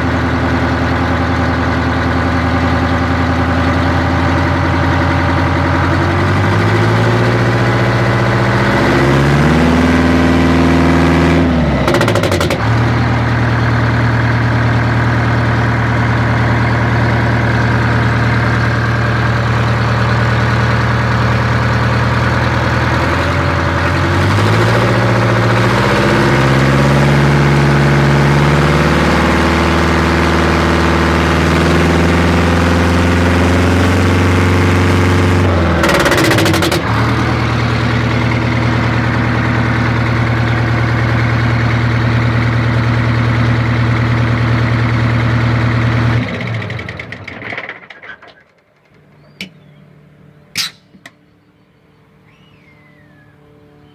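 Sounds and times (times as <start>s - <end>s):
diesel engine revving: 0.0s - 48.1s.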